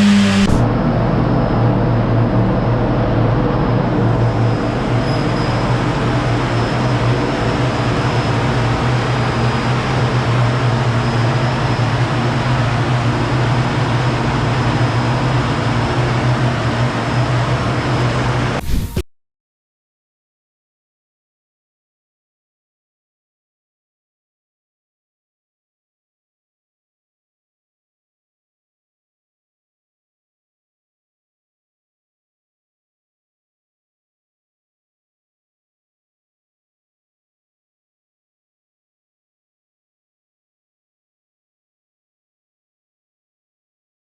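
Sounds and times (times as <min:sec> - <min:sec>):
motorcycle engine revving: 0:00.0 - 0:00.7.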